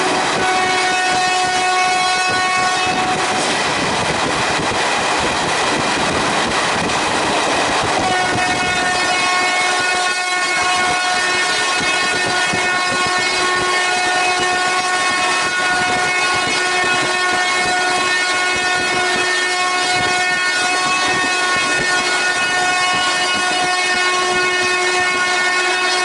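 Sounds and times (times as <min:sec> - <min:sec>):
locomotive horn blast: 0:00.0 - 0:03.6, 0:08.0 - 0:26.0
train rushing on rails: 0:00.0 - 0:26.0.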